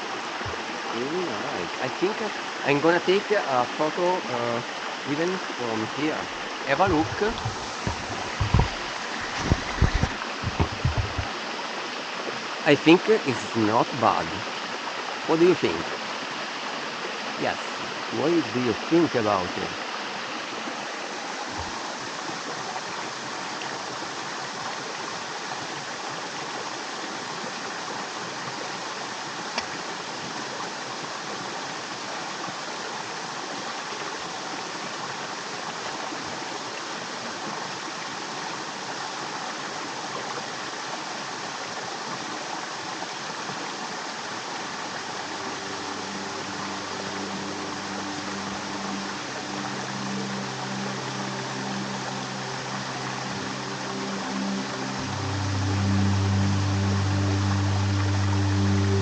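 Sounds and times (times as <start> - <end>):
stream rushing over rocks: 0.0 - 59.0
low hum of held tones: 45.2 - 59.0.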